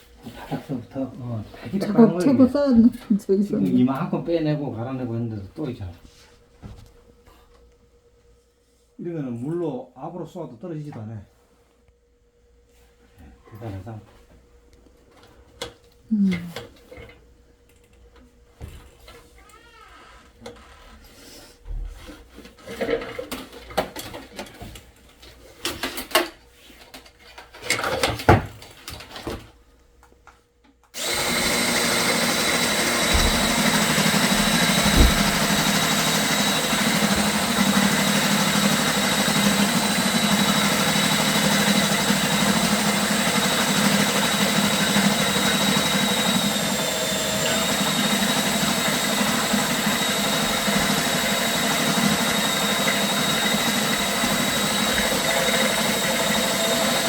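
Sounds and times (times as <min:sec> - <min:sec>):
drain-cleaning machine whining: 0:01.7 - 0:05.0, 0:31.0 - 0:57.0.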